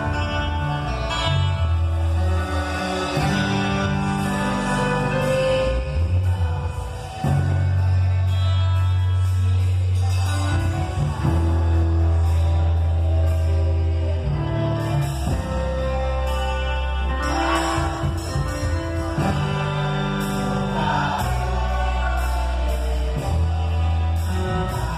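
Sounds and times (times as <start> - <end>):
band playing: 0.0 - 24.9
long held bass notes: 0.0 - 24.9
person singing: 0.0 - 24.9.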